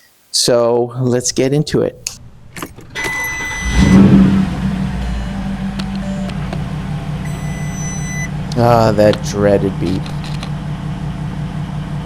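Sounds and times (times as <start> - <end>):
car engine starting and idling: 1.8 - 12.0
dashboard warning beep: 2.6 - 10.4.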